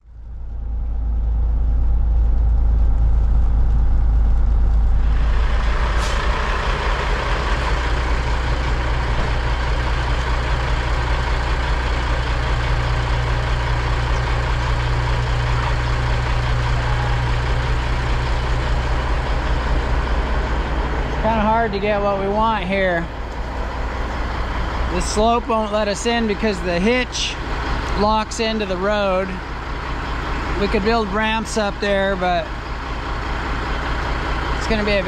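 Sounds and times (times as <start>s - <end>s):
truck engine rumbling: 0.0s - 35.0s.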